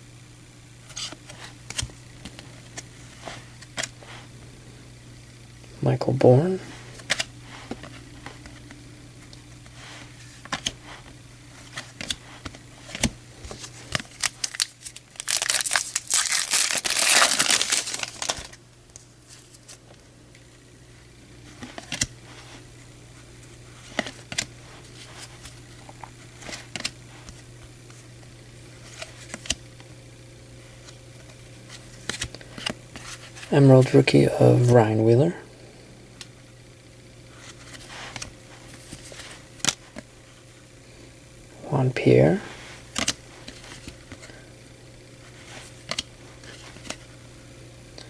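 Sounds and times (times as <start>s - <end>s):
faint steady hum: 0.0s - 48.0s
cards clicking and tapping: 10.4s - 10.8s, 42.9s - 44.3s
wrapper ripping and crinkling: 13.5s - 18.6s.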